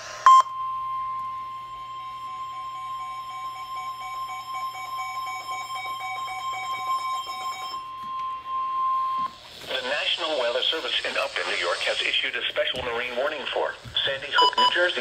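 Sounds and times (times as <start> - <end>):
fainter lower tone: 0.2 - 10.8
steady high alarm beep: 0.2 - 11.6, 14.3 - 15.0.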